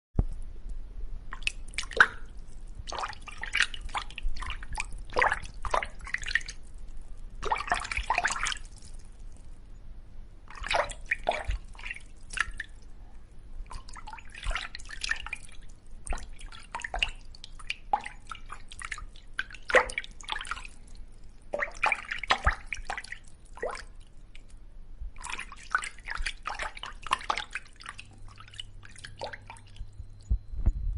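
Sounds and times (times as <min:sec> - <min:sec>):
fish splashing in water: 0:01.3 - 0:06.7, 0:10.5 - 0:12.8, 0:13.7 - 0:24.0, 0:25.2 - 0:29.9.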